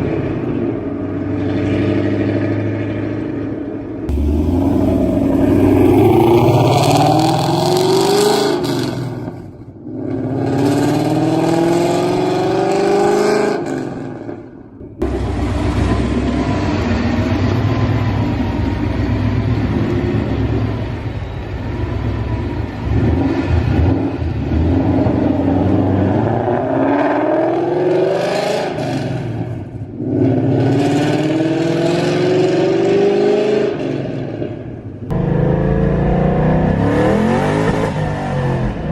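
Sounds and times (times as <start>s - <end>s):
car engine accelerating hard: 4.1s - 9.3s.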